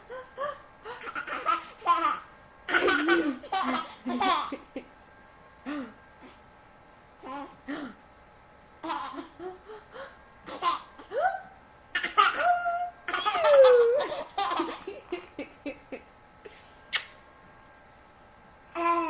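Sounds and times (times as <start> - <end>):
baby laughing and squealing: 12.0 - 14.9.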